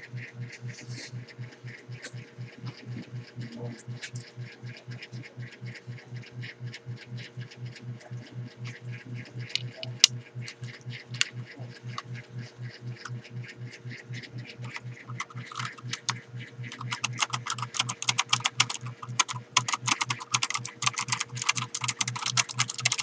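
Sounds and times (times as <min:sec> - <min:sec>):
pulsing low hum: 0:00.0 - 0:23.0
keyboard typing clicks: 0:14.5 - 0:23.0
loud keyboard clack: 0:14.6 - 0:23.0.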